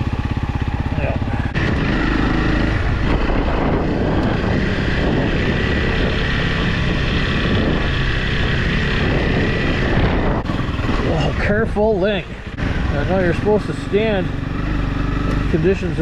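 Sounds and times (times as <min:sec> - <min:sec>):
motorcycle engine running: 0:00.0 - 0:16.0
wind noise on microphone: 0:01.5 - 0:13.2.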